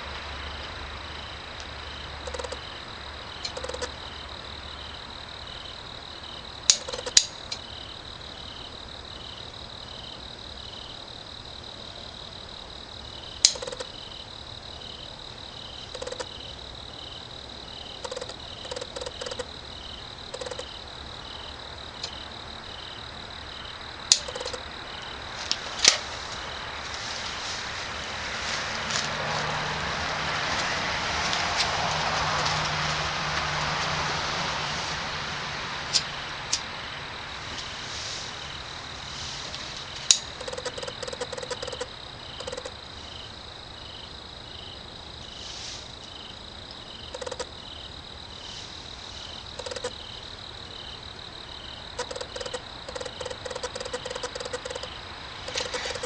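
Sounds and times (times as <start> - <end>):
insects chirping: 0.0 - 56.0
sharp clicks: 3.4 - 3.9, 6.7 - 7.6, 13.4 - 13.9, 18.0 - 19.5, 20.3 - 20.7, 24.1 - 24.6, 40.0 - 42.7, 47.1 - 47.5, 52.0 - 54.9
hiss: 37.3 - 39.9, 45.3 - 46.0, 48.4 - 49.3.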